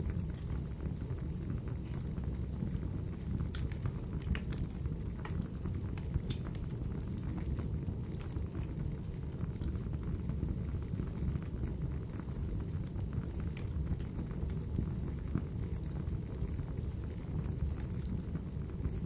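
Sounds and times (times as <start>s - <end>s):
wood fire crackling: 0.0s - 19.0s
sharp pops and snaps: 3.5s - 8.5s.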